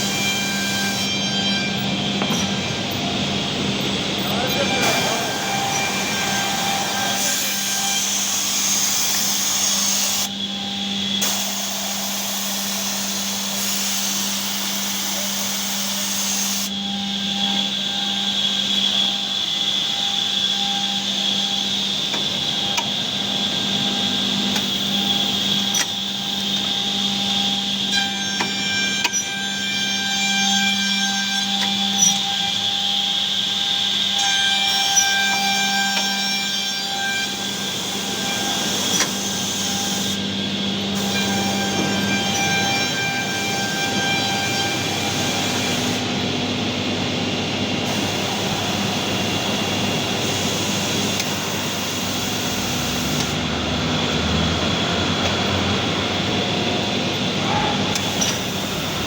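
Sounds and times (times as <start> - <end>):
machine motor hum and whine: 0.0 - 59.0
cutters hissing on wood: 4.6 - 10.3, 11.2 - 16.7.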